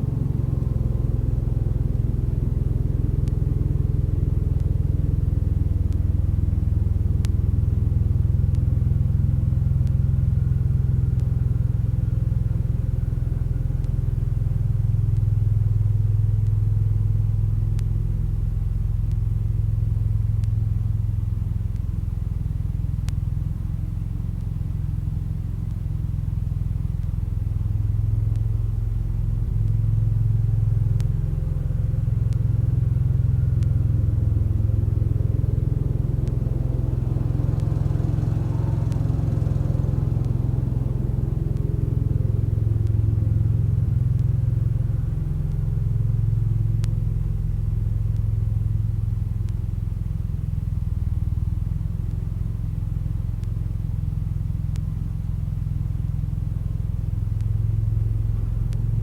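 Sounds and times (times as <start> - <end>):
garden tractor engine droning: 0.0 - 8.3, 28.7 - 49.9.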